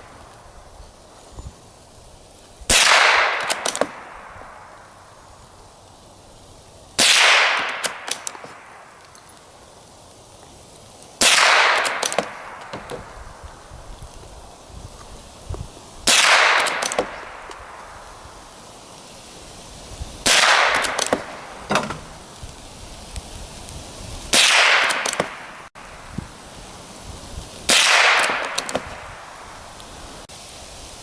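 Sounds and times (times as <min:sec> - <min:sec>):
rifle shots: 0:02.7 - 0:04.5, 0:07.0 - 0:08.8, 0:11.2 - 0:13.1, 0:16.1 - 0:17.8, 0:20.2 - 0:21.8, 0:24.3 - 0:25.6, 0:27.7 - 0:29.0.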